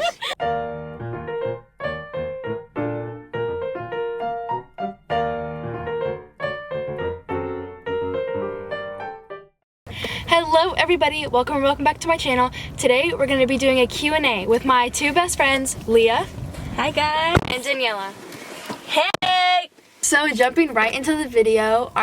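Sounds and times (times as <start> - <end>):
piano intro music: 0.4 - 9.6.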